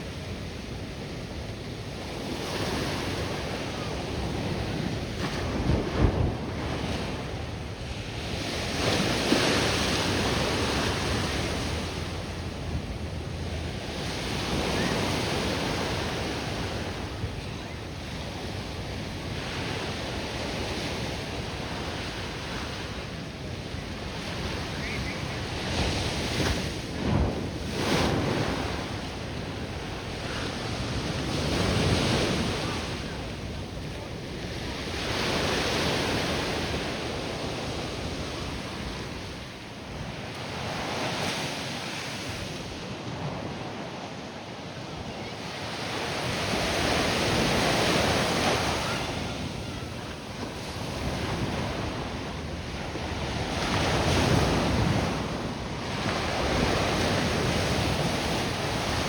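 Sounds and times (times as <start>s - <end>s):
wind buffeting microphone: 0.0s - 41.3s
ocean surf breaking: 0.0s - 59.0s.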